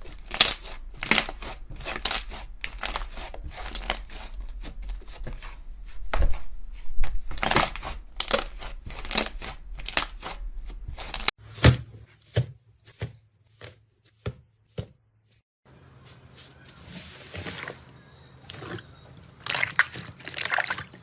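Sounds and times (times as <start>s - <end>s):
slime squished by hand: 19.4s - 21.0s.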